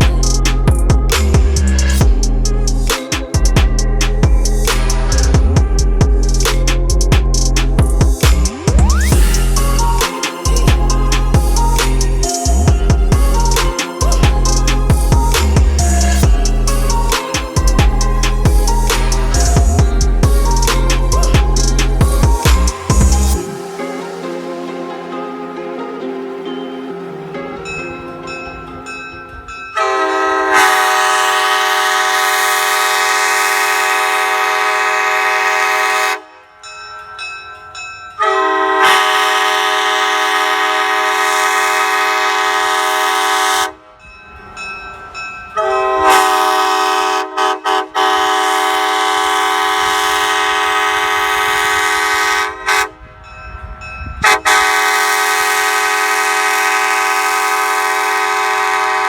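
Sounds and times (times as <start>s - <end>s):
train horn chord blasts: 23.3s - 36.6s, 38.2s - 44.0s, 45.6s - 53.2s, 54.2s - 59.0s.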